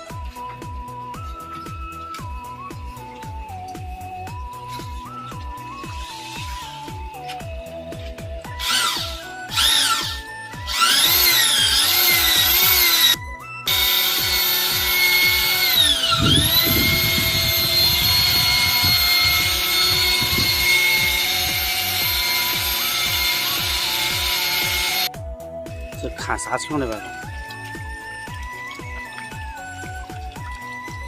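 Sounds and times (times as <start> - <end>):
background music with a beat: 0.0 - 31.0
electric drill motor whining: 1.3 - 25.1.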